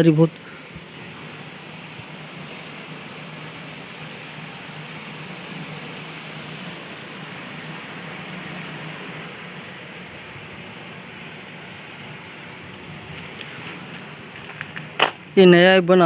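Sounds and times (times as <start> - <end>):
water rushing through weir: 0.0 - 15.5.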